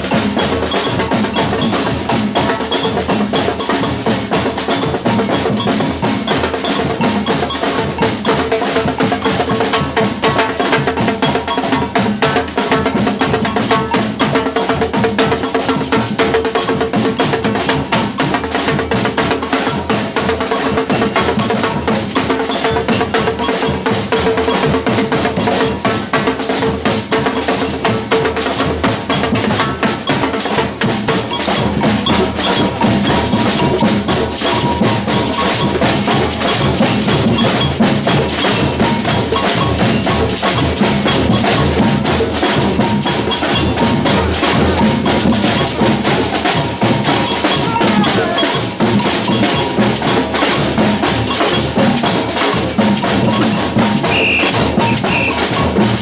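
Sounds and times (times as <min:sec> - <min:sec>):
samba percussion ensemble: 0:00.0 - 0:56.0.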